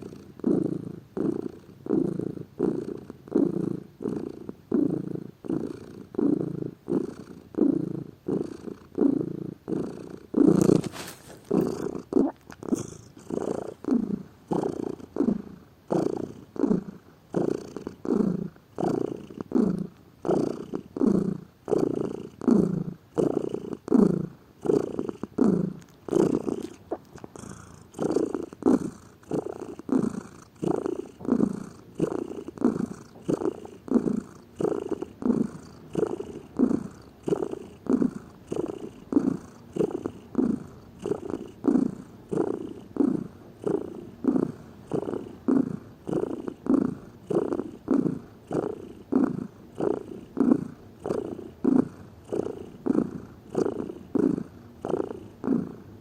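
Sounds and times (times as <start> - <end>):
cat purring: 0.0 - 56.0
brief rustle: 10.7 - 11.5.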